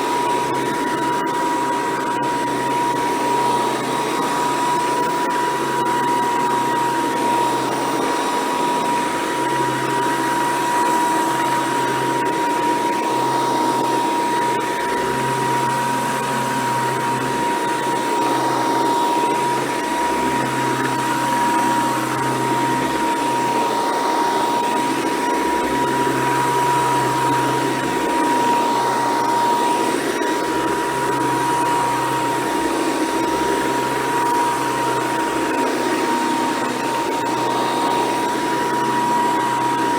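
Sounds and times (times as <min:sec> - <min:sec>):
vacuum cleaner motor whine: 0:00.0 - 0:39.9.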